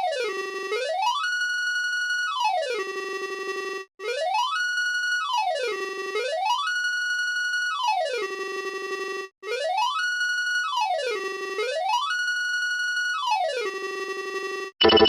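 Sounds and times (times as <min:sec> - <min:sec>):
electronic wailing siren: 0:04.0 - 0:15.0.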